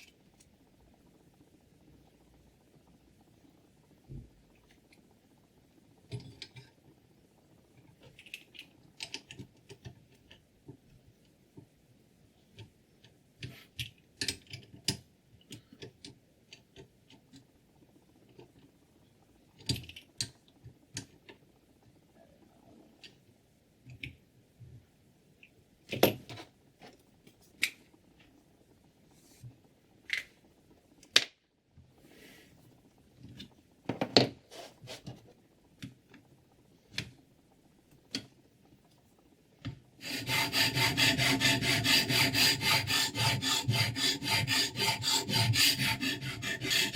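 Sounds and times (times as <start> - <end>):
clicks and knocks of handling tools: 12.6 - 17.5.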